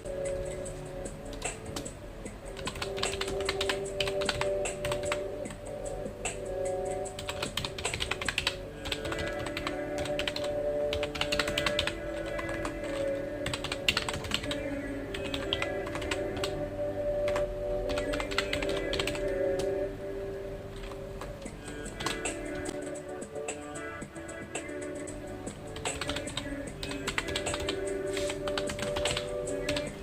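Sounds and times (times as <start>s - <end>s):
soft background music: 0.0s - 30.0s
keyboard typing clicks: 2.6s - 5.6s, 7.2s - 16.6s, 17.2s - 19.8s, 25.8s - 30.0s.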